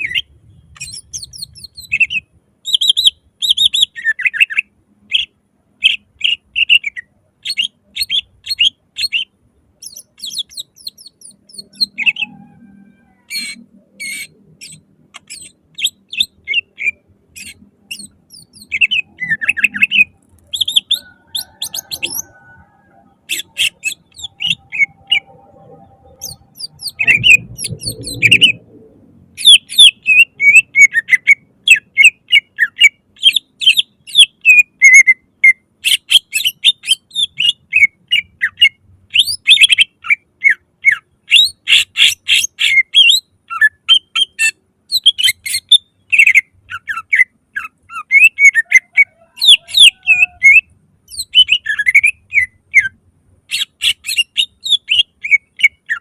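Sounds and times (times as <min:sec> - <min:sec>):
bird singing trills: 0:00.0 - 0:56.0
low rumbling noise: 0:17.0 - 0:30.4.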